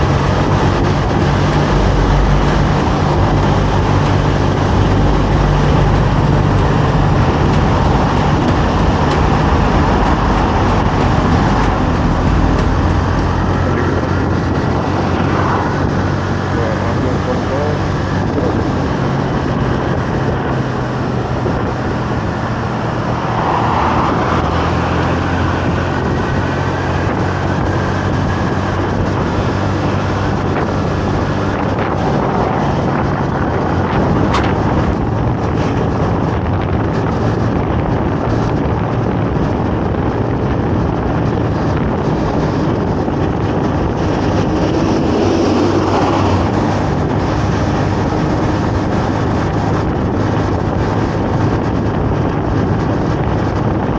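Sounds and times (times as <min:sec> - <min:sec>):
motorcycle engine cruising: 0:00.0 - 0:16.4
wind noise on microphone: 0:00.0 - 0:53.9.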